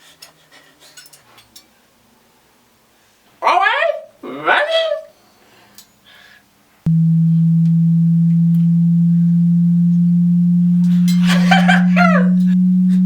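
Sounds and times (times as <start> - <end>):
low steady test tone: 6.9 - 13.0.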